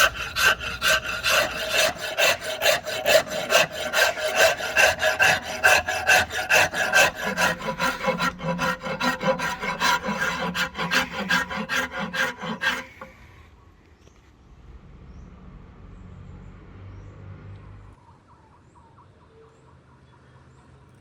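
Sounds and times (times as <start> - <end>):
hand rasp scraping wood: 0.0 - 13.2.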